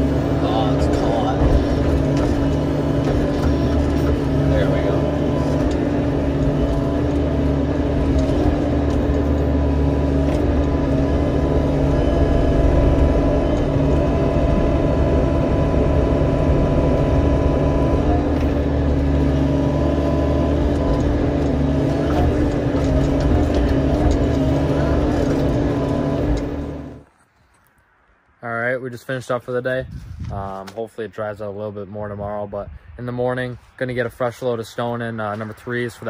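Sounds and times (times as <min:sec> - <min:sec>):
diesel engine running: 0:00.0 - 0:27.0.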